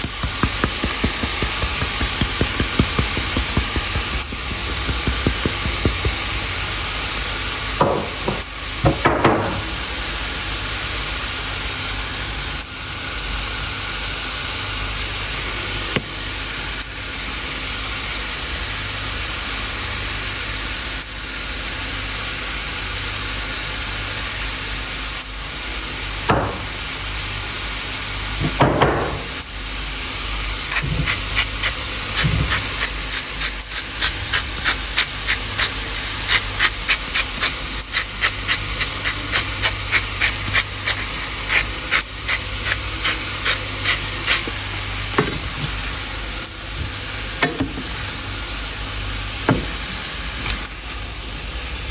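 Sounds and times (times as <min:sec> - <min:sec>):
utensil scraping: 0:00.0 - 0:06.7, 0:30.7 - 0:44.6.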